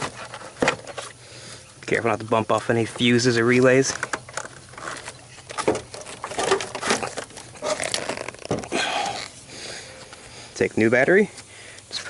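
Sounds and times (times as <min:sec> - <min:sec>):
battery case knocking and scraping: 0:03.8 - 0:07.5.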